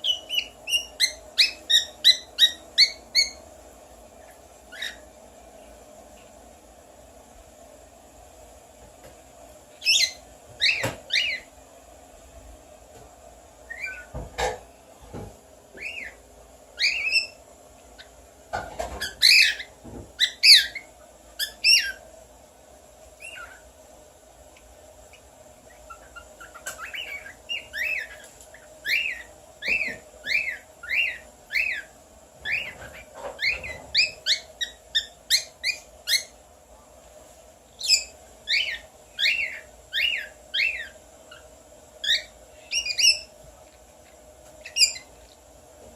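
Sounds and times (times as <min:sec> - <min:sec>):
bird whistling: 0:00.0 - 0:03.4, 0:09.8 - 0:11.5, 0:13.7 - 0:14.1, 0:15.8 - 0:16.2, 0:16.8 - 0:17.4, 0:19.0 - 0:22.0, 0:25.7 - 0:28.2, 0:28.8 - 0:36.3, 0:37.8 - 0:43.3, 0:44.6 - 0:45.1.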